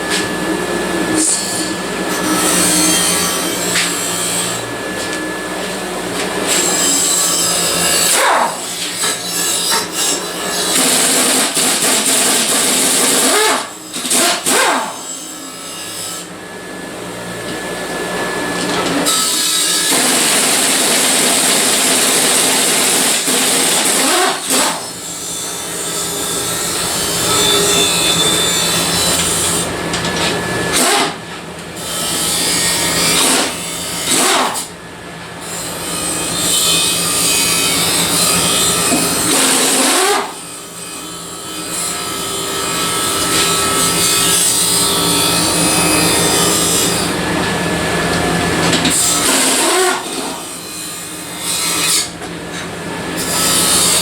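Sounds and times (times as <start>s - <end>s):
power tool grinding sheet metal: 0.0s - 54.0s.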